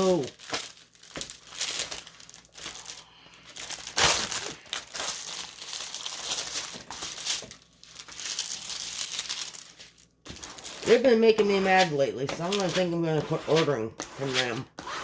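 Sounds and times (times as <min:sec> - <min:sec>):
packaging crumpling: 0:00.0 - 0:11.9
packaging crinkling and rustling: 0:00.0 - 0:13.0.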